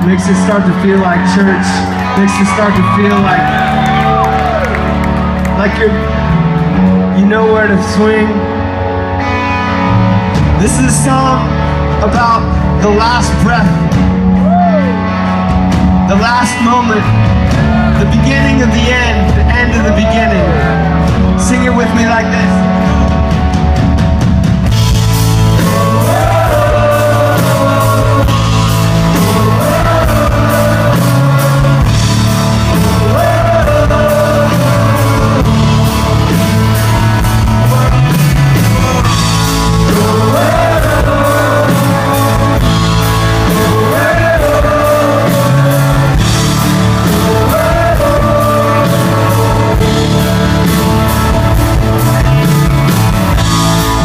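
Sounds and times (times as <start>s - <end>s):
guitars: 0.0s - 54.0s
steady drum beat: 22.8s - 54.0s
person singing: 25.4s - 53.0s.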